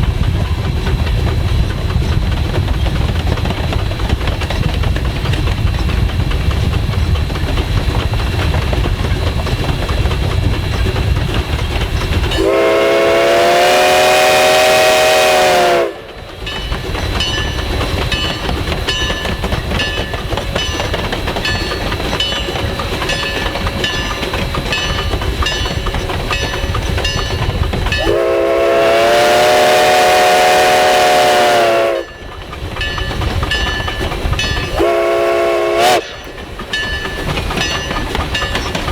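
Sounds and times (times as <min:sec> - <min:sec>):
train rumble and wheel clatter: 0:00.0 - 0:38.9
chime steam whistle blasts: 0:12.3 - 0:16.1, 0:22.4 - 0:32.3, 0:34.5 - 0:36.6.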